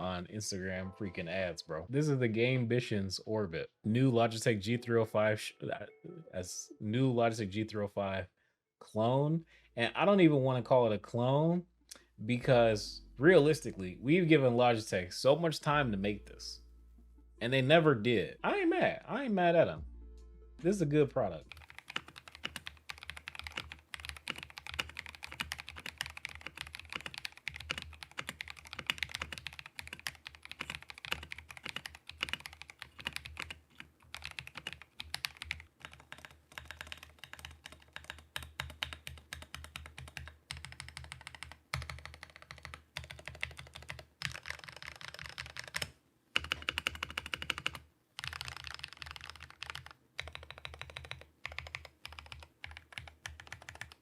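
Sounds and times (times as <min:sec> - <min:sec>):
mechanical keyboard typing: 0:21.4 - 0:54.0.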